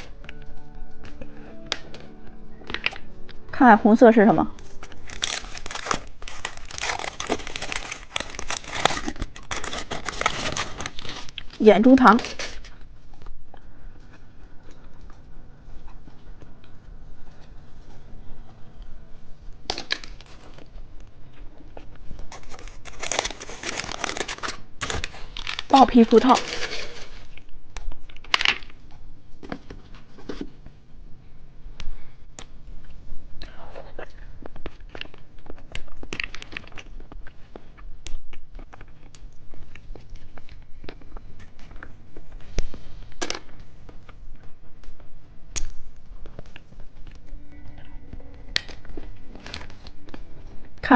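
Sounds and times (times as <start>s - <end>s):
plastic packaging crinkling: 4.5s - 13.4s, 19.7s - 20.9s, 21.7s - 28.8s, 34.5s - 45.0s, 48.3s - 50.9s.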